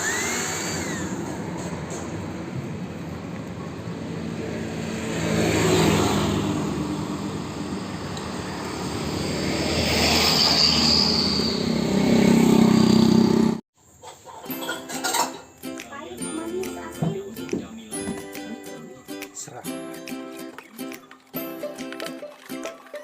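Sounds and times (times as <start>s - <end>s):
electric blender motor running: 0.0s - 1.4s.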